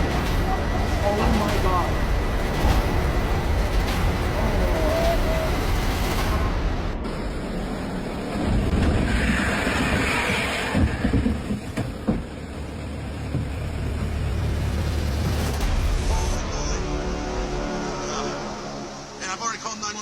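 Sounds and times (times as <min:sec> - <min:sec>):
knocks: 0:09.8 - 0:12.5.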